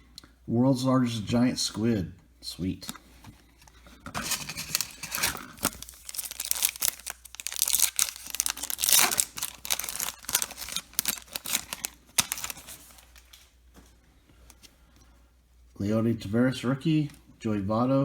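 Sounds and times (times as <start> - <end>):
foil wrapper tearing and crinkling: 4.1 - 13.5.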